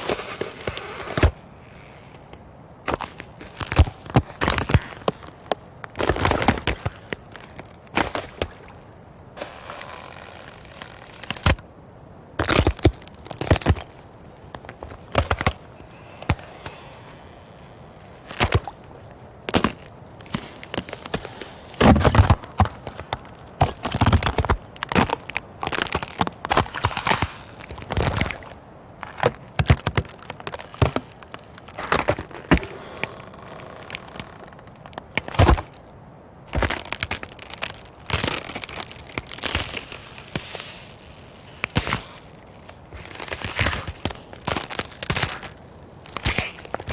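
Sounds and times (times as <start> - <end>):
ice cracking and breaking: 0.0 - 11.6, 12.4 - 35.8, 36.5 - 46.9
faint background ambience: 0.0 - 46.9.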